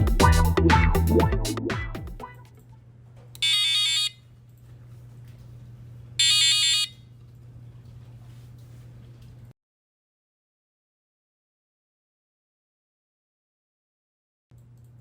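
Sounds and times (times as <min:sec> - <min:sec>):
warbling electronic buzzer alarm: 0:03.4 - 0:04.2, 0:06.2 - 0:07.0.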